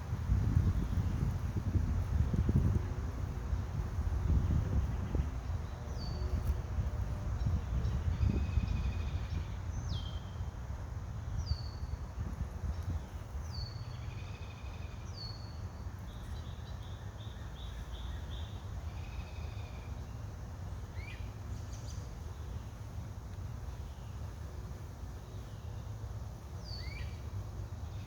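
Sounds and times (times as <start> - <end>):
steady low rumble: 0.0 - 15.0
wild birds singing: 0.4 - 10.6, 11.3 - 28.0.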